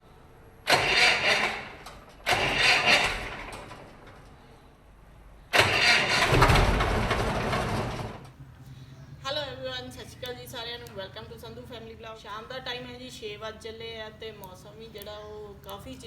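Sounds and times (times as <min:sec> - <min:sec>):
engine starter cranking: 0:00.7 - 0:04.3, 0:05.5 - 0:08.3.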